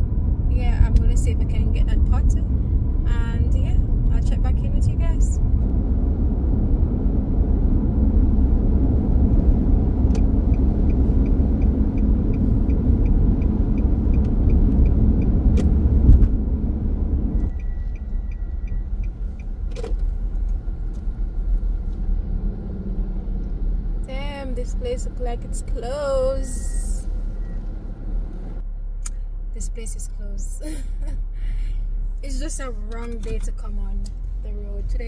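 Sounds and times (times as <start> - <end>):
car road and engine rumble: 0.0 - 35.0
turn signal ticking: 8.8 - 22.4, 31.0 - 35.0.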